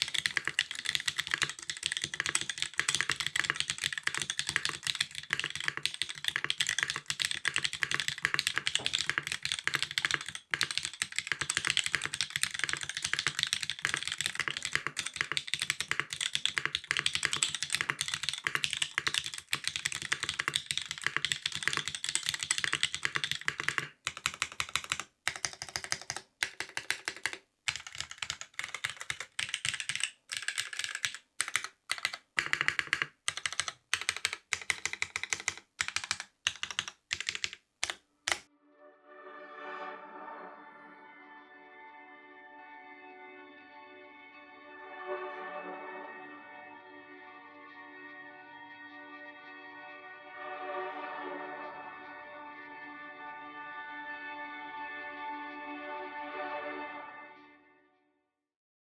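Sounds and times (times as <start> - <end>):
mechanical keyboard typing: 0.0 - 38.5.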